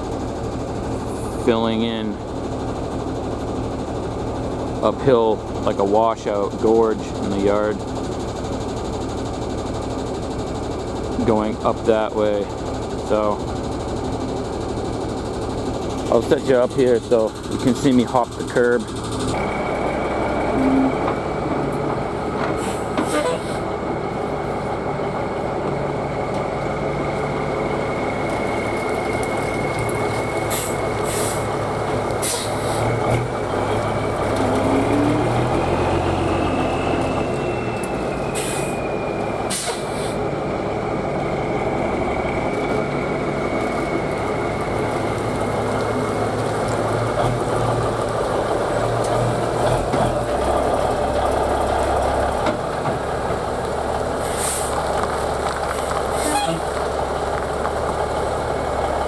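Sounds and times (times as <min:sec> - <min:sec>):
diesel truck engine: 0:00.0 - 0:59.0
air brake hisses: 0:22.6 - 0:23.6, 0:30.5 - 0:31.5, 0:32.2 - 0:32.8, 0:38.0 - 0:38.8, 0:39.5 - 0:40.2, 0:54.2 - 0:54.8.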